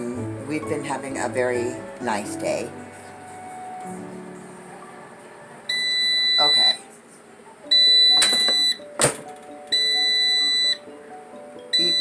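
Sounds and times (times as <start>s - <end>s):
high-pitched electronic beeps: 7.7s - 8.8s, 11.7s - 12.0s.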